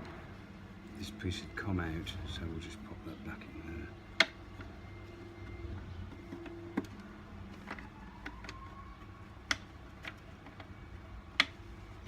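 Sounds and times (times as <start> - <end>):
low steady hum: 0.0 - 12.0
plastic vacuum parts clicking: 5.4 - 11.8.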